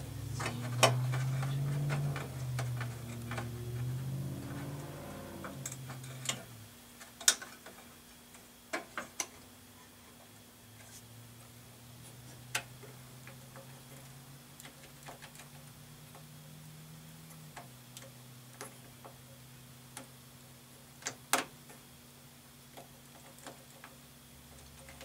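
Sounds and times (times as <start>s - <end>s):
low electrical hum: 0.0s - 25.0s.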